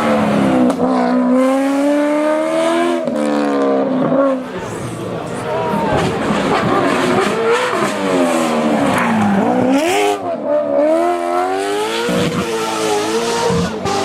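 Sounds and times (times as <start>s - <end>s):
racing engine at high revs: 0.0s - 14.0s.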